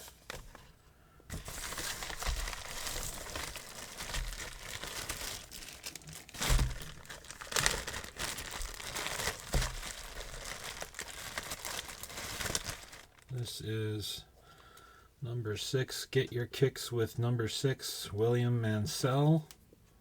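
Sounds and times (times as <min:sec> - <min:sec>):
packing wrap crinkling and tearing: 0:01.3 - 0:13.4.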